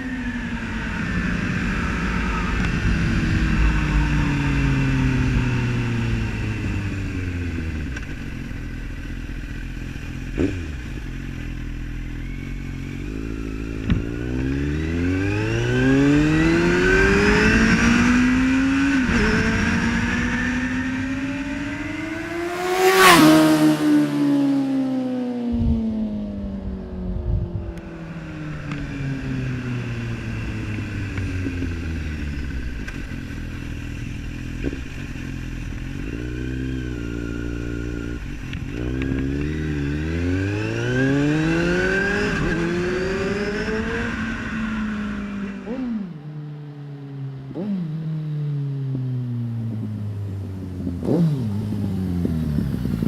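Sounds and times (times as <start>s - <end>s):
motorcycle revving past: 12.1s - 27.1s, 34.8s - 53.0s.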